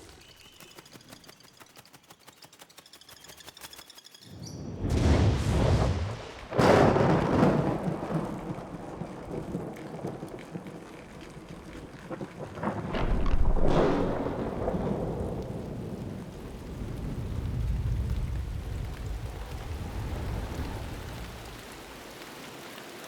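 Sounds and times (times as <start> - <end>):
rolling thunder: 4.7 - 22.0
steady rain: 4.8 - 23.0.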